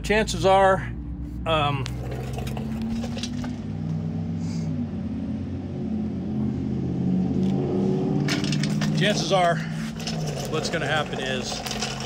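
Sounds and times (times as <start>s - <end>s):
engine idling: 0.0s - 5.2s, 8.2s - 12.0s.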